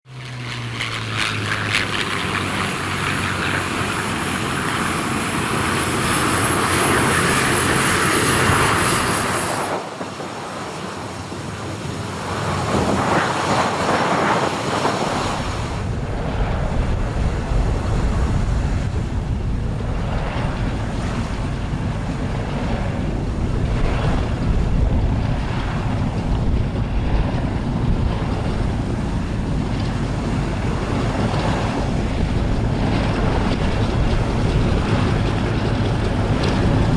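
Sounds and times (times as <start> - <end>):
propeller fighter plane engine: 0.0 - 36.9
heavy deep rumble: 14.8 - 36.9.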